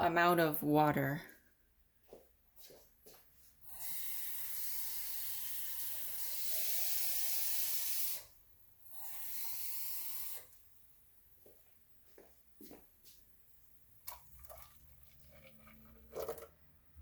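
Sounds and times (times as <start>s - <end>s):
water pouring into pot: 14.0s - 16.6s.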